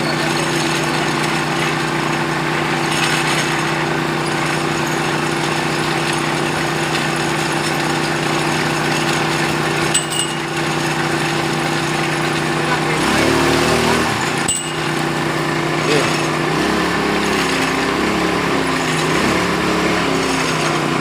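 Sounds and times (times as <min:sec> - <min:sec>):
small engine running: 0:00.0 - 0:21.0
metallic clink: 0:09.9 - 0:10.5, 0:14.4 - 0:15.1.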